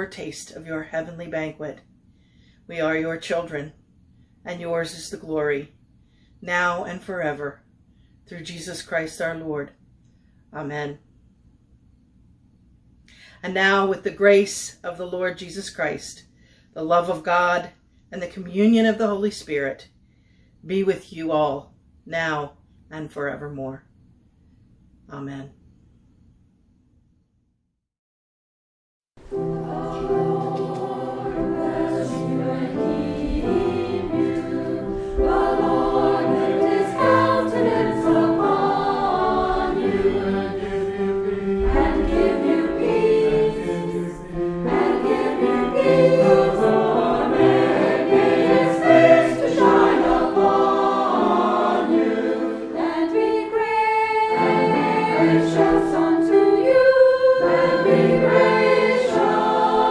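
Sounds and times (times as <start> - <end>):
choir singing in harmony: 29.2 - 59.9.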